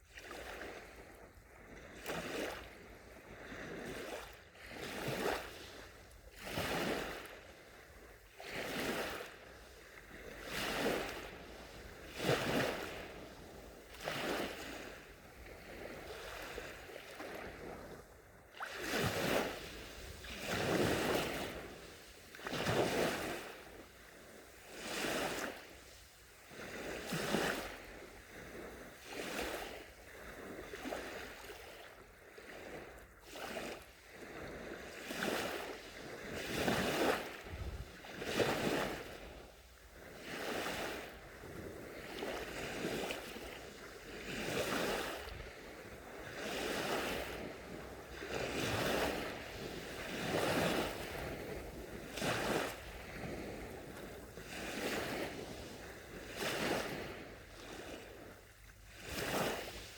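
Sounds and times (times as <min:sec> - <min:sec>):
small waves lapping on sand: 0:00.0 - 0:59.9.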